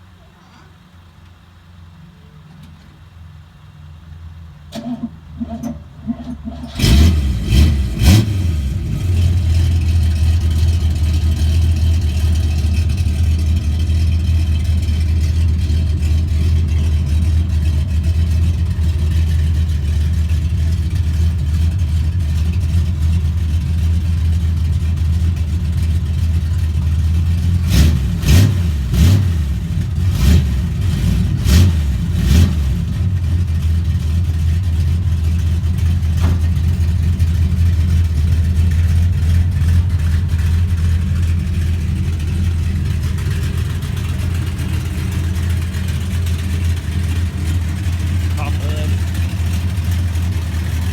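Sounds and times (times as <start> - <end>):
car engine starting and idling: 0.0 - 50.9
engine revving: 4.7 - 23.0, 26.5 - 34.2, 38.0 - 50.9.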